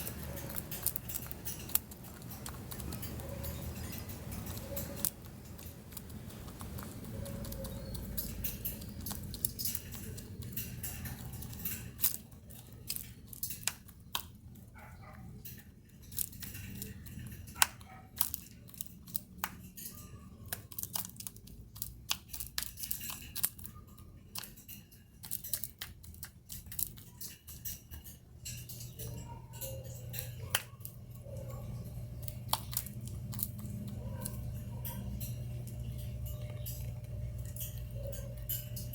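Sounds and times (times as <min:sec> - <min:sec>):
hen pecking at seeds: 0:00.0 - 0:38.9
low steady hum: 0:00.0 - 0:38.9.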